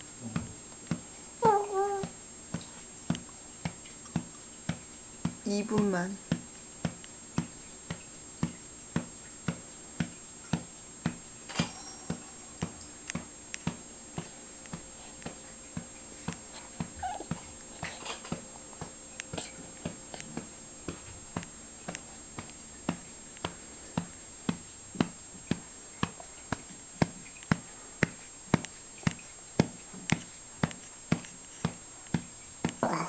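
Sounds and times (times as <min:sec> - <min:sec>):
patting on a back: 0:00.0 - 0:33.0
baby whimpering: 0:01.4 - 0:02.1, 0:16.9 - 0:18.2, 0:32.8 - 0:33.0.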